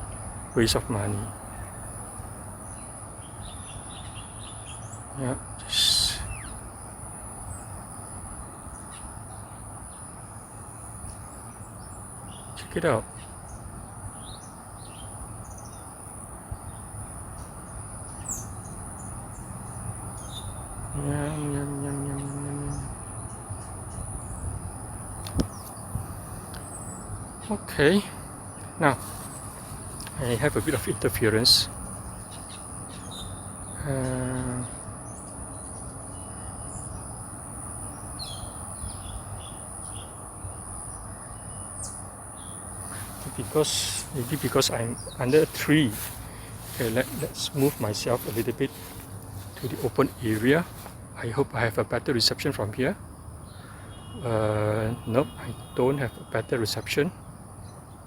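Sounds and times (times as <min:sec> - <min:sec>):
bird chirps: 0:02.7 - 0:06.6, 0:11.0 - 0:24.5, 0:28.6 - 0:37.2, 0:37.8 - 0:51.6, 0:53.4 - 0:58.0
high-pitched insect drone: 0:17.8 - 0:25.2, 0:27.4 - 0:34.9, 0:40.6 - 0:51.5.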